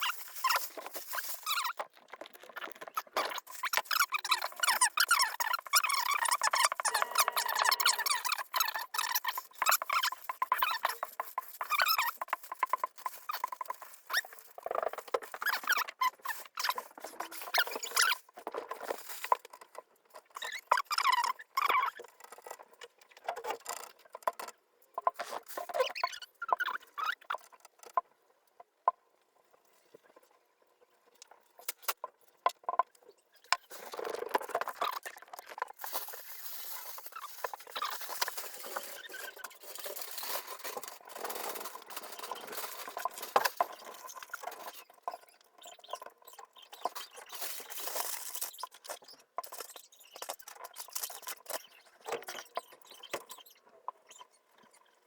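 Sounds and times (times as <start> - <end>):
light scratching and rustling: 0.0 - 19.8, 33.4 - 44.9.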